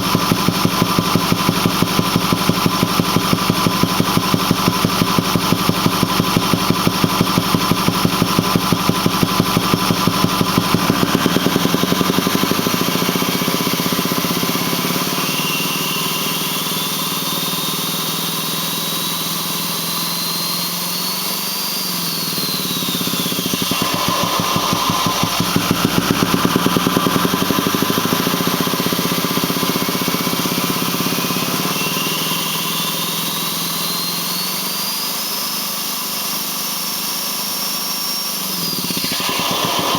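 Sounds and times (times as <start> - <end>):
rhythmic intake thumping: 0.0 - 14.8, 23.4 - 31.8
diesel engine idling and revving: 0.0 - 37.6, 38.3 - 39.9
turbo whistle: 0.0 - 39.9.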